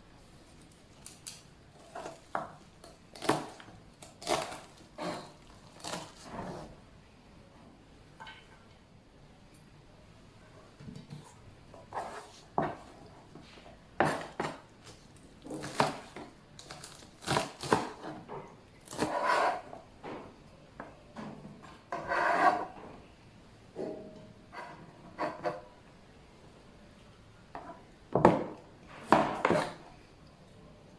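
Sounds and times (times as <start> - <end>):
utensils scraping: 22.0 - 22.8.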